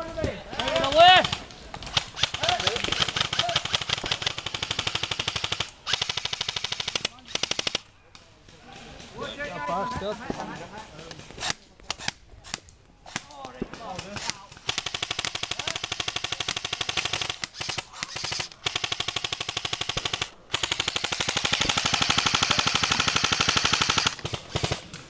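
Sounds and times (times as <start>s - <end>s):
airsoft rifle firing rapid bursts: 0.6s - 7.8s, 13.8s - 25.0s.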